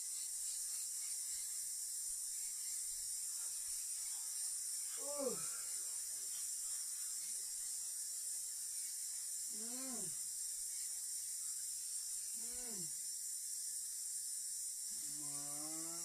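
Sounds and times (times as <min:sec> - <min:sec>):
high-pitched hiss: 0:00.0 - 0:16.0
voice: 0:05.0 - 0:05.6, 0:09.5 - 0:10.1.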